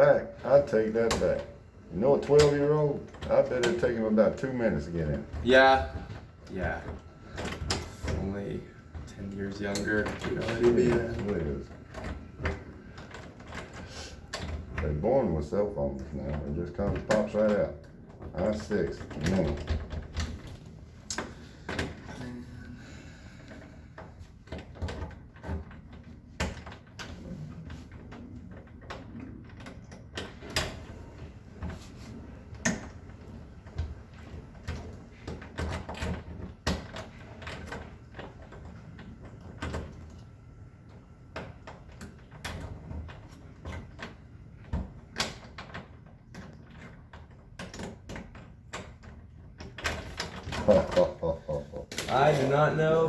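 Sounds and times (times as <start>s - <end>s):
doorknob lock clicking and rattling: 41.3s - 51.2s.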